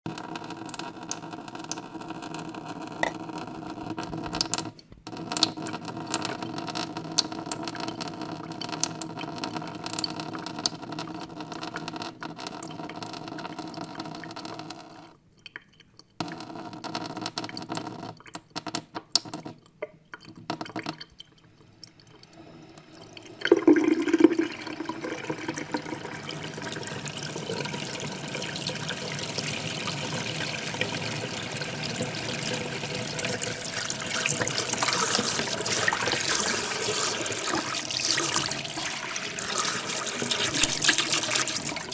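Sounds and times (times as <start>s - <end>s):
tap water splashing into metal sink: 22.8s - 41.9s.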